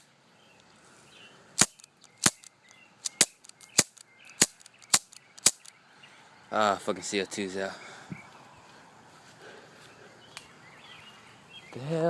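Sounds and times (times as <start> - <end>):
air gun pops: 1.6 - 5.7.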